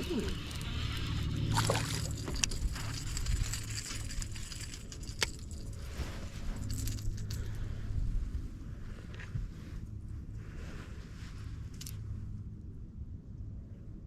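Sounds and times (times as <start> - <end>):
small metal objects jingling: 0.0 - 7.7
low rumble: 0.0 - 14.0.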